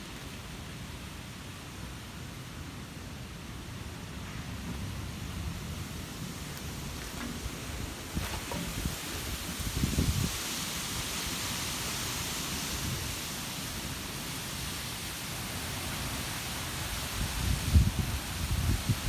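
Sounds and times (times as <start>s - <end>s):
wind gusts buffeting microphone: 5.0s - 11.4s, 16.9s - 19.0s
wind hissing: 5.0s - 19.0s.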